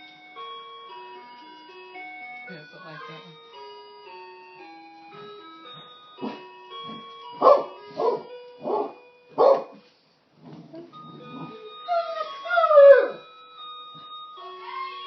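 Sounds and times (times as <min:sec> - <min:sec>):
electronic doorbell chime tune: 0:00.0 - 0:10.0, 0:10.9 - 0:15.0
dog barking: 0:07.4 - 0:09.8.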